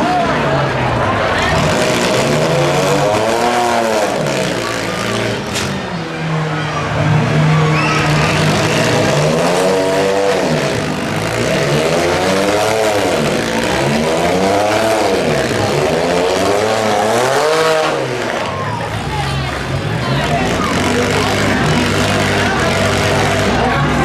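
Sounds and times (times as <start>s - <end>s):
car engine revving: 0.0s - 24.0s
din of car engines: 0.0s - 24.0s.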